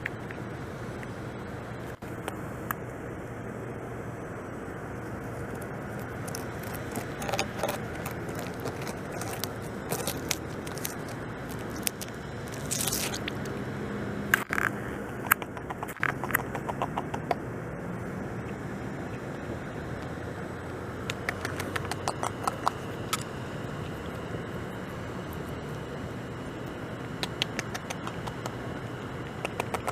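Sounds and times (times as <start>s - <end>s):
steady background noise: 0.0s - 29.9s
beaver gnawing bark: 5.2s - 13.6s, 14.3s - 17.4s, 21.0s - 25.8s, 27.1s - 28.6s, 29.2s - 29.9s
quick clicks: 21.1s - 23.2s.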